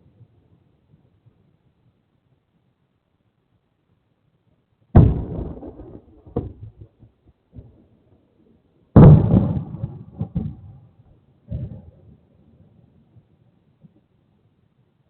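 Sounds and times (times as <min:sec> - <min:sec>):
faint firework pops: 0:05.0 - 0:07.8, 0:09.0 - 0:10.8
fireworks booming: 0:05.0 - 0:07.8, 0:09.0 - 0:10.9, 0:11.5 - 0:12.1.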